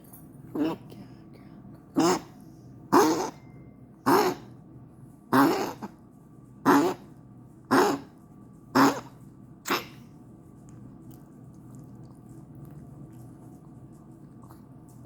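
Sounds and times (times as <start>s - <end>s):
dog coughing: 2.0s - 3.4s, 4.1s - 4.5s, 5.3s - 5.9s, 6.7s - 7.0s, 7.7s - 8.1s, 8.8s - 9.1s, 9.7s - 10.1s.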